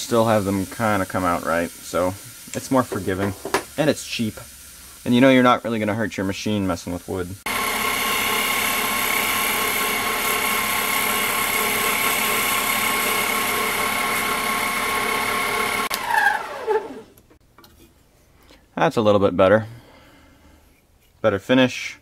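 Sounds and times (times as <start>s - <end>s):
metal lathe whining: 7.5s - 17.1s.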